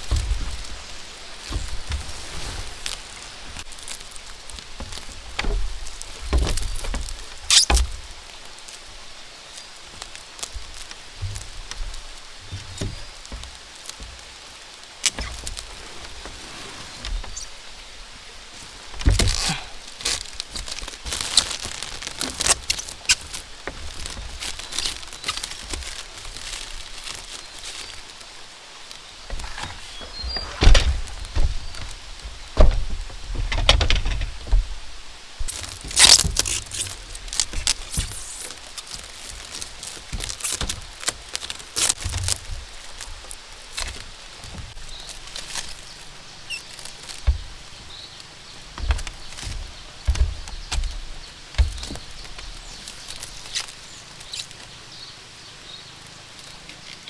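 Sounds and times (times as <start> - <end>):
rain: 0.0 - 57.0
knocks and taps on bamboo: 3.5 - 8.9, 9.6 - 15.6, 29.3 - 47.9, 48.6 - 53.7.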